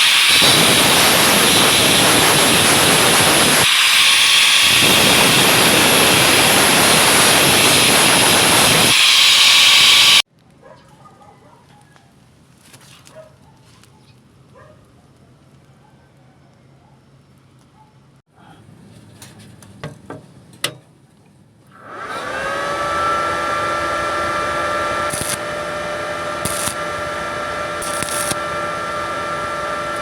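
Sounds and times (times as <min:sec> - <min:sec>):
welding arc hissing: 0:00.0 - 0:10.2, 0:23.6 - 0:30.0.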